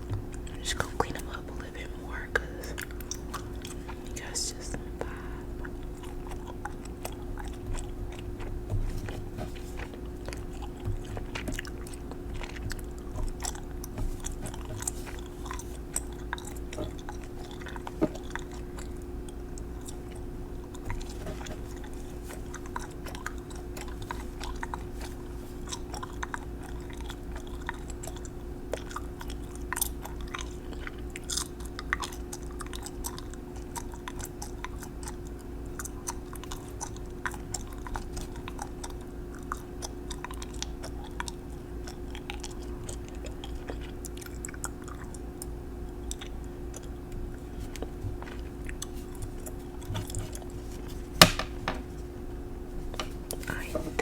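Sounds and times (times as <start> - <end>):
gum chewing and smacking: 0.0 - 54.0
steady low hum: 0.0 - 54.0.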